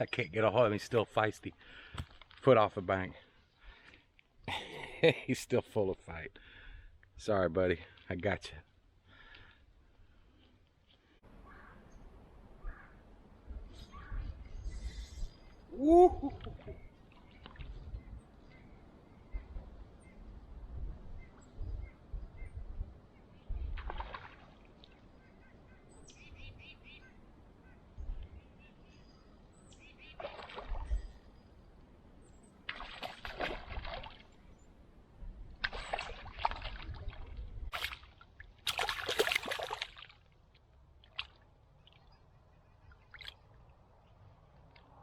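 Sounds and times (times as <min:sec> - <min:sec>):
faint bird chirps: 0:13.7 - 0:20.3
water splashing and sloshing: 0:16.2 - 0:17.9, 0:23.7 - 0:25.2, 0:30.0 - 0:31.5, 0:32.3 - 0:34.7, 0:35.4 - 0:45.0.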